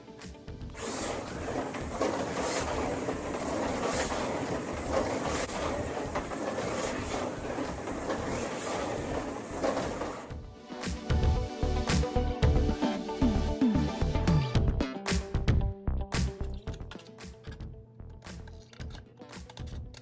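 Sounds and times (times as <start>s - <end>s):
slot cars buzzing: 0.8s - 10.3s.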